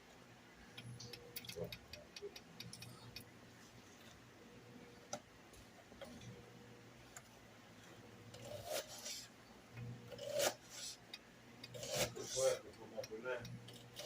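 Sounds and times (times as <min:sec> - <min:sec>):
low steady hum: 0:00.0 - 0:14.0
faint ticking: 0:00.6 - 0:03.4
rough scraping: 0:08.3 - 0:09.4, 0:10.1 - 0:11.0, 0:11.7 - 0:12.6.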